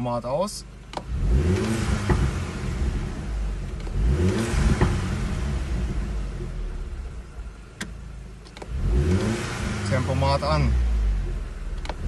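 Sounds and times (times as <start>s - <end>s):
car engine revving: 0.7s - 12.0s
exhaust pops: 0.9s - 7.1s.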